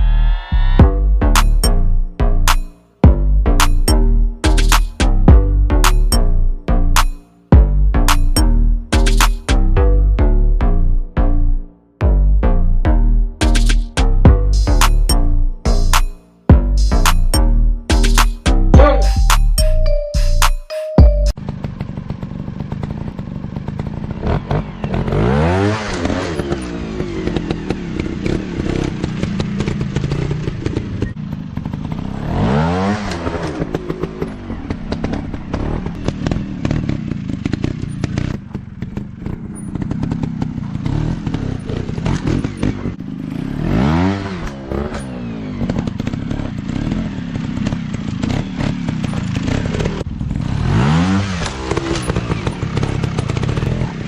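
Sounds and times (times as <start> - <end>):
dirt bike engines revving: 23.5 - 54.0.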